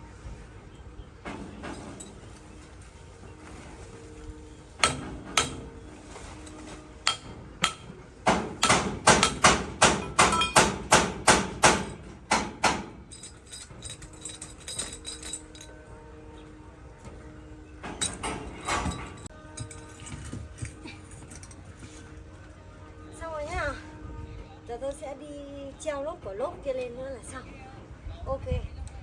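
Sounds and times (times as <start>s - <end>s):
hammer blows: 3.6s - 13.3s.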